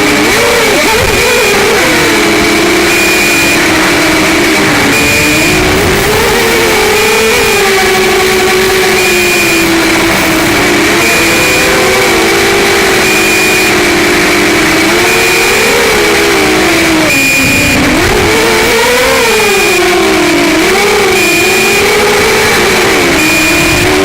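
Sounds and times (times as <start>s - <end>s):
drone motors whining: 0.0s - 24.0s
short high beeps: 2.2s - 14.2s.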